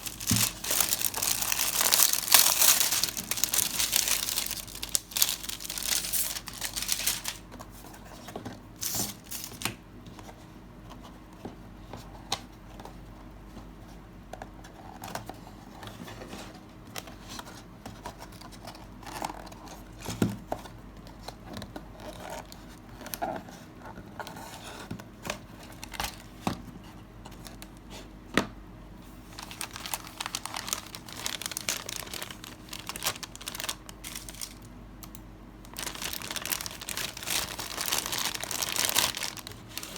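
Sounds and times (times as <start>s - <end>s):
plastic wrapping crinkling and tearing: 0.0s - 7.6s, 8.8s - 9.8s, 29.2s - 39.9s.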